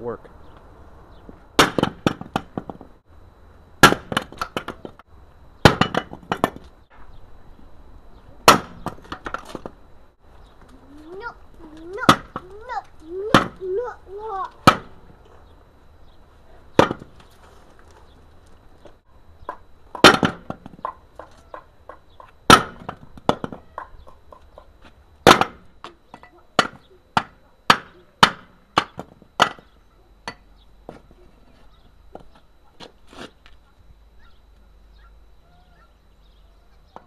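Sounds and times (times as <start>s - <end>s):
sharp blows on metal compressor: 3.8s - 4.2s.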